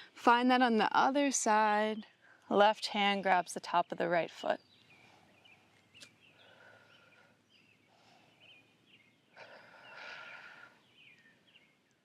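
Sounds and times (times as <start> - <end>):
faint bird chirps: 4.5 - 12.0.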